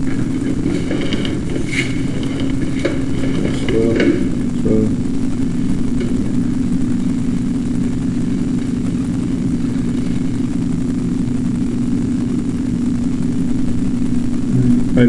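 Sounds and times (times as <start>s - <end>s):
machine humming: 0.0s - 15.0s.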